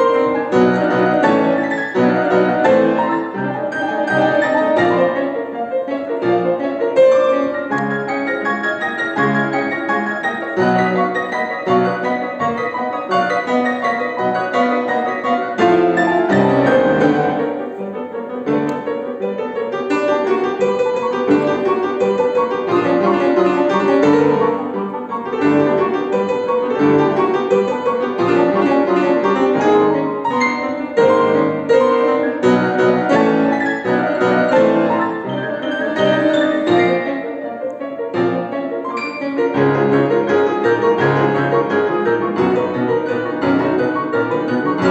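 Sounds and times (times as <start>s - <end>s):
piano piece with quick high passages: 0.0s - 44.9s.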